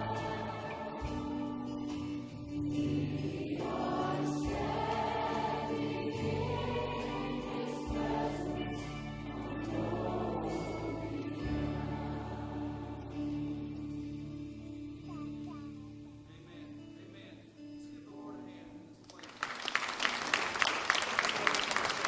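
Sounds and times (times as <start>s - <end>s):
choir singing a worship song: 0.0s - 15.3s.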